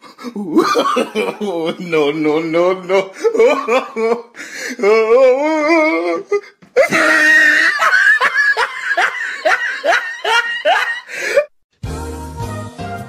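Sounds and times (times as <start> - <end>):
person laughing: 0.2 - 11.5.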